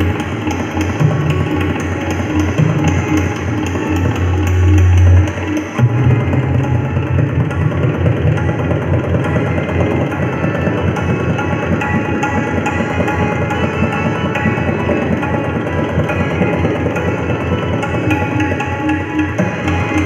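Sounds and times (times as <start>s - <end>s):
tabla fast solo: 0.0s - 20.0s.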